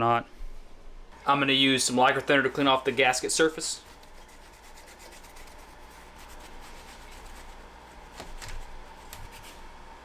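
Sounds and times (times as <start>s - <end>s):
rag rubbing on metal surface: 2.4s - 7.8s.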